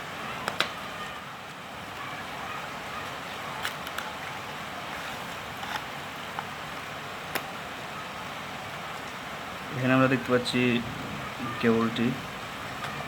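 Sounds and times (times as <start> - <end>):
steady background hiss: 0.0 - 13.0
packaging clicks and taps: 0.4 - 0.8.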